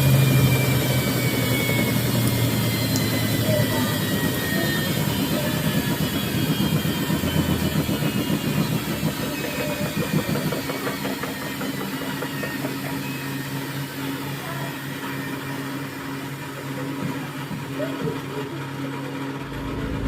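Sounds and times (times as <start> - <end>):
washing machine motor humming: 0.0 - 9.5, 19.3 - 20.0.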